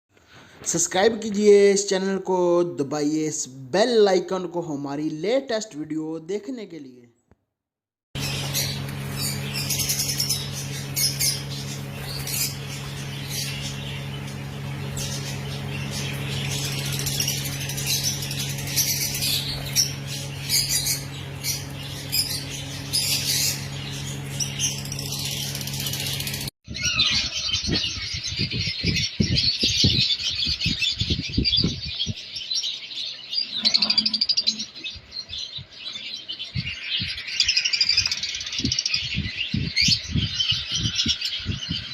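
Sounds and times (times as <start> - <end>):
steady low hum: 8.2 - 26.5
cage birds chattering and squawking: 8.2 - 41.9.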